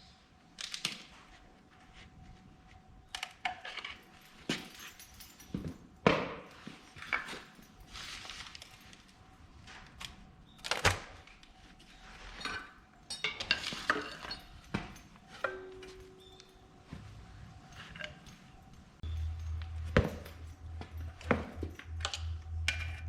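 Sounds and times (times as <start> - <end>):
metal tools clinking and knocking: 1.9 - 23.0.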